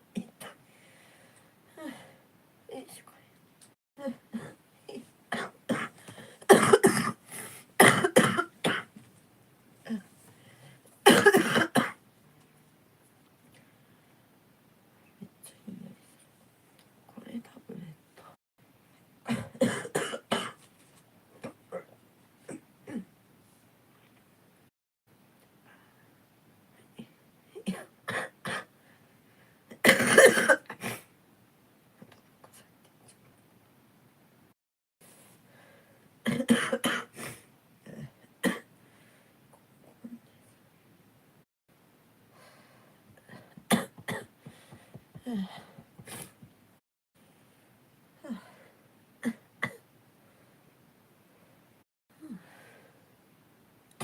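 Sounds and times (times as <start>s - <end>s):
person coughing: 4.4s - 7.2s, 7.8s - 8.9s, 11.0s - 12.0s, 19.3s - 20.6s, 29.8s - 31.0s, 36.3s - 38.7s, 43.4s - 46.4s.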